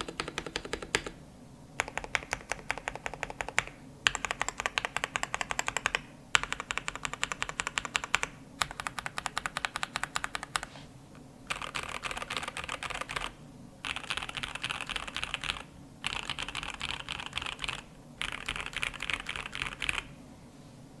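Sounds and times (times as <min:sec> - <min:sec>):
mechanical keyboard typing: 0:00.0 - 0:01.2, 0:01.8 - 0:10.7, 0:11.5 - 0:20.1.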